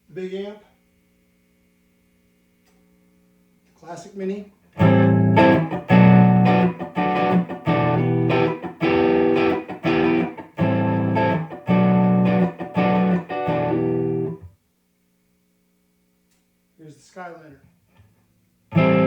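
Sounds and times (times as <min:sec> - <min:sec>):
faint amp hum: 0:00.0 - 0:19.0
clean electric guitar chord stabs: 0:04.8 - 0:14.4, 0:18.7 - 0:19.0.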